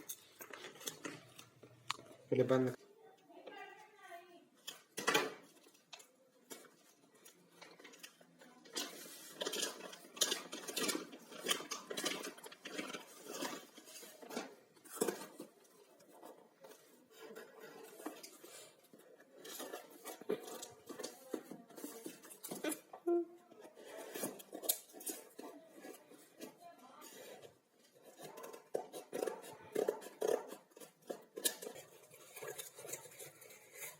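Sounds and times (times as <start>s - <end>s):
packaging rustling: 5.5s - 27.4s.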